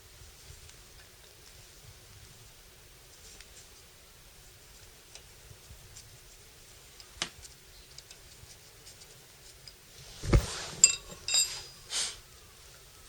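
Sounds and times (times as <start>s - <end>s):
thump: 10.2s - 10.8s
metallic clinks: 10.8s - 11.8s.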